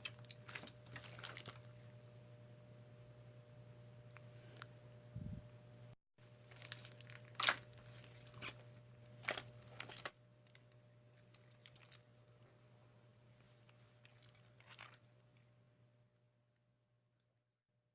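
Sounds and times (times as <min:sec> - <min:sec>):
slime crackling and popping: 0:00.0 - 0:01.9, 0:06.5 - 0:08.6
faint steady hum: 0:00.0 - 0:17.4.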